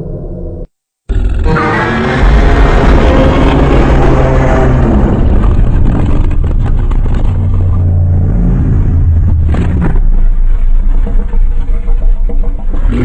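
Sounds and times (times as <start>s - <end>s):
monster growl: 1.1s - 6.4s.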